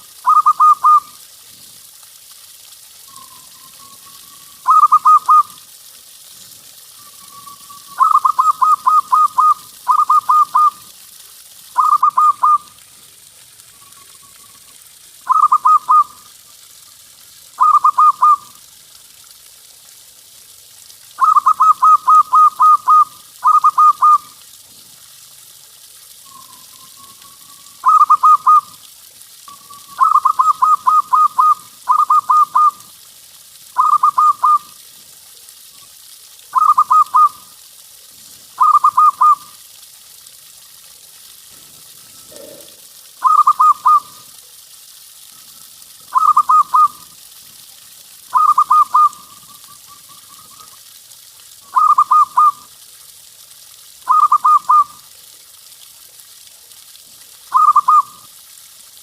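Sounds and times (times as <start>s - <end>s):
faint steady hiss: 0.0s - 59.0s
dove cooing: 0.2s - 1.1s, 3.7s - 5.5s, 7.9s - 10.8s, 15.3s - 16.1s, 17.6s - 18.4s, 29.9s - 32.8s, 42.2s - 44.1s, 46.2s - 46.9s, 51.7s - 52.6s, 57.5s - 58.1s.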